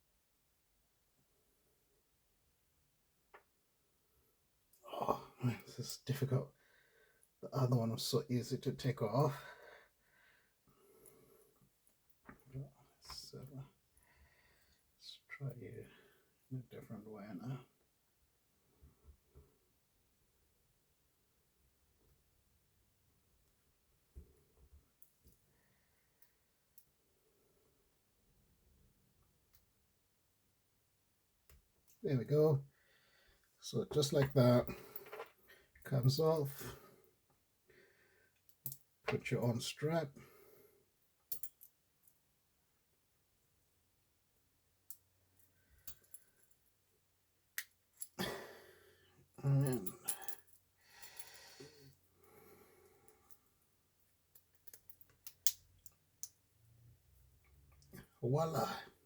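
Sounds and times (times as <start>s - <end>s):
soft breathing: 9.3s - 11.8s, 14.0s - 15.0s, 48.2s - 53.6s.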